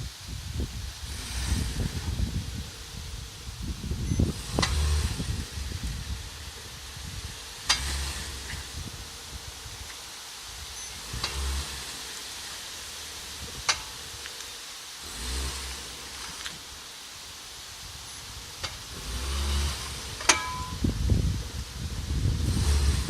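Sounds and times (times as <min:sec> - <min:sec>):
car engine revving: 0:01.0 - 0:09.6, 0:10.5 - 0:16.9, 0:17.8 - 0:23.0
sharp metallic knocks: 0:20.2 - 0:20.9.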